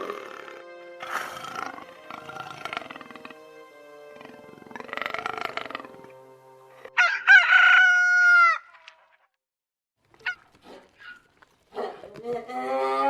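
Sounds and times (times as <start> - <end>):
rooster crowing: 6.9 - 8.8.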